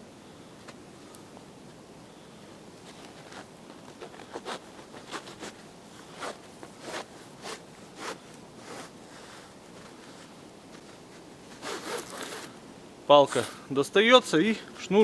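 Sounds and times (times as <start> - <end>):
cord rasping through fabric: 3.2 - 12.6.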